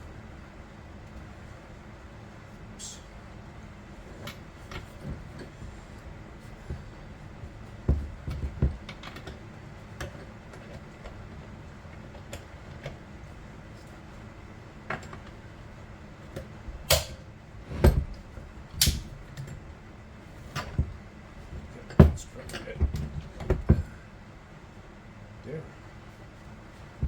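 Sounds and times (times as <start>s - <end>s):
loud knocks: 21.9s - 24.0s.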